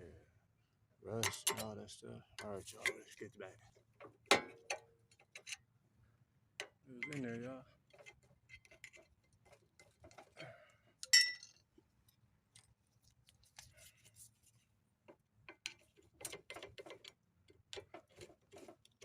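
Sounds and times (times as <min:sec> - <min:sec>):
loud ringing metal clink: 0:11.1 - 0:11.4.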